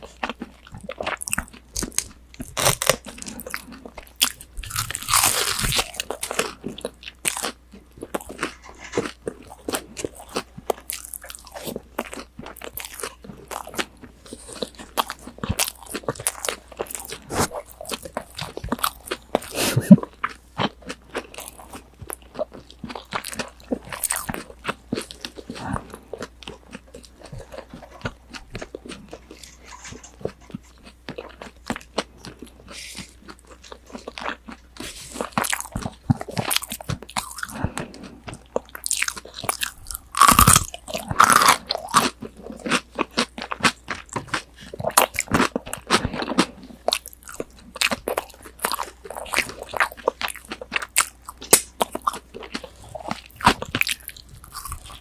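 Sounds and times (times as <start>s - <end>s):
crunchy fried food being chewed: 0.0s - 55.0s.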